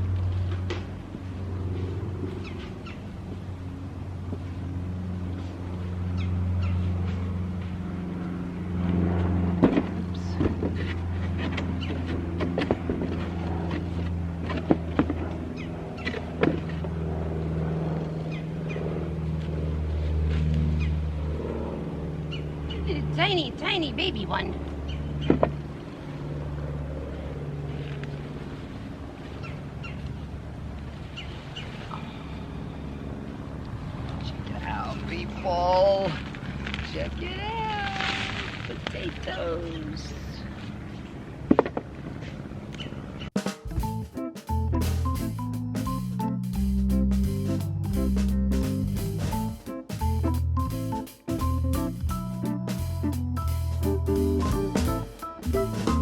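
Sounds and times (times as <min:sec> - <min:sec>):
low motor hum: 0:00.0 - 0:56.0
knocks and scrapes digging soil: 0:09.6 - 0:15.4.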